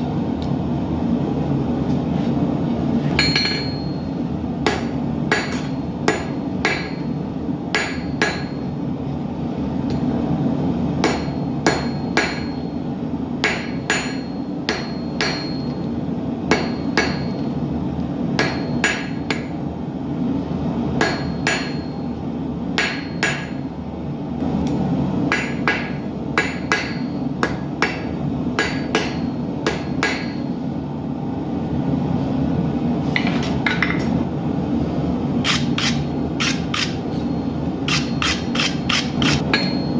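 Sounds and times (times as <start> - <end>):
hammer striking steel on anvil: 3.1 - 8.8, 11.0 - 15.9, 16.5 - 17.6, 18.4 - 19.6, 21.0 - 23.7, 25.3 - 30.6, 35.4 - 39.9.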